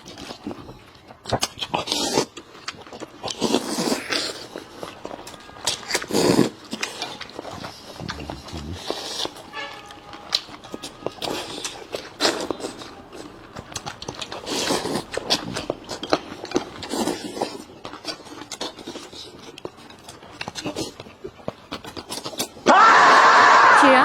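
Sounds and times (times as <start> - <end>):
person slurping noodles: 1.7 - 2.4, 3.2 - 4.7, 5.9 - 7.0, 7.6 - 9.4, 14.4 - 15.6.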